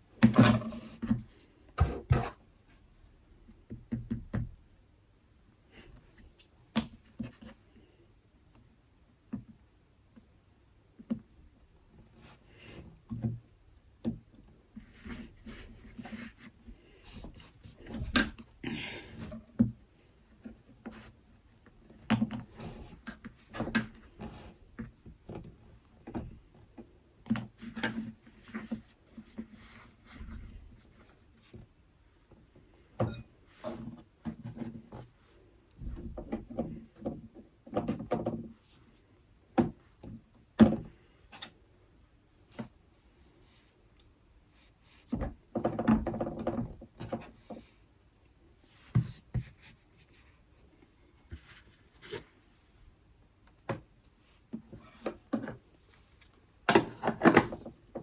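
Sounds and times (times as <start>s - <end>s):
baking items clattering on worktop: 0.2s - 1.2s.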